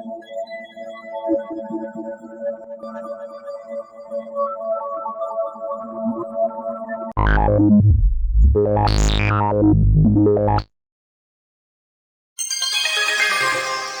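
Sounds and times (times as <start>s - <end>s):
deep sweeping synth effect: 7.2s - 10.7s
electronic tone pattern: 7.2s - 10.7s.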